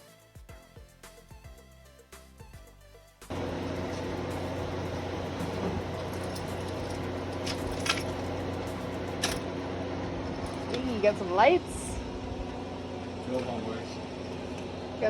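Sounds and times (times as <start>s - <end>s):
low mechanical hum: 3.3s - 15.0s.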